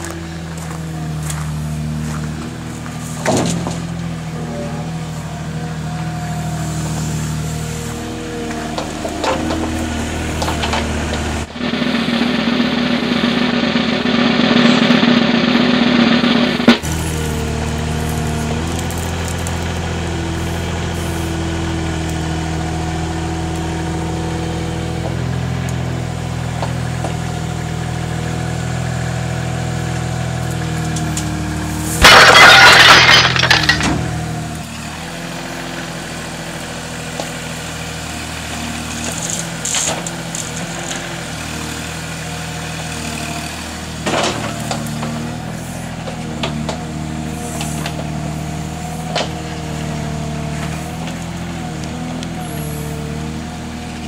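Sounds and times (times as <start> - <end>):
mini digger engine running: 0.0 - 54.0
loud crash: 11.4 - 17.0, 31.9 - 34.2.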